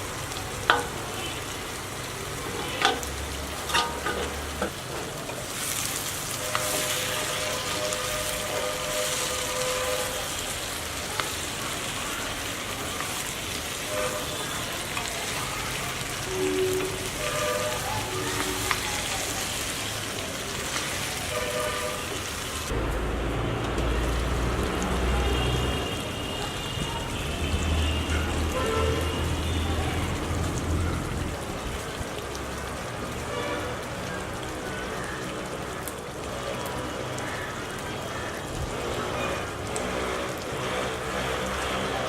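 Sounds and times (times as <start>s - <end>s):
chicken sizzling in a pan: 0.0s - 22.7s, 32.8s - 42.0s.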